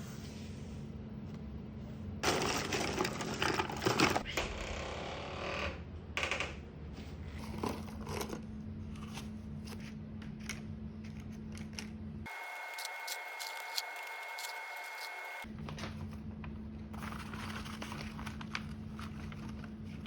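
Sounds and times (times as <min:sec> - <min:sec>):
plastic crinkling and rustling: 0:11.2 - 0:20.0.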